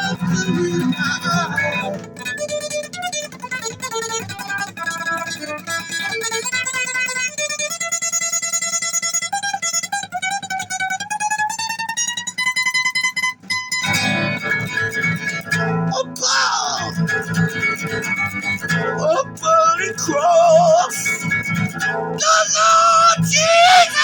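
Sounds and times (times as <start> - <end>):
heavy metal lead guitar solo: 0.0 - 2.2, 15.4 - 24.0.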